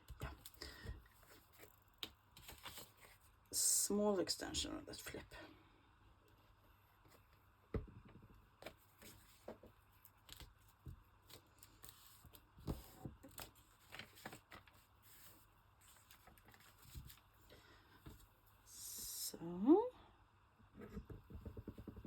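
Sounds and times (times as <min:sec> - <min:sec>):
paper rustling: 0:01.1 - 0:03.3, 0:08.6 - 0:17.4.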